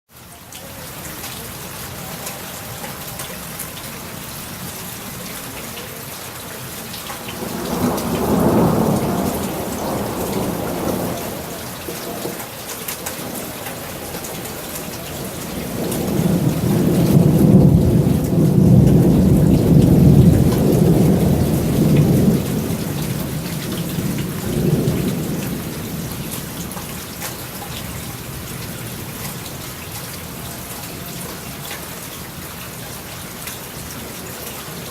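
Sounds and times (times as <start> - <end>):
steady rain: 0.1 - 34.9
thunder rumbling: 7.2 - 27.2.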